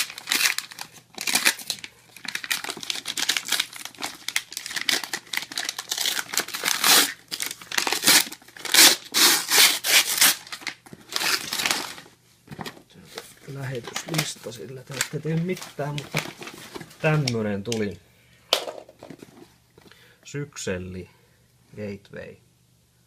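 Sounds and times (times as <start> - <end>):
packaging torn and crumpled: 0.0 - 12.8, 13.7 - 17.8.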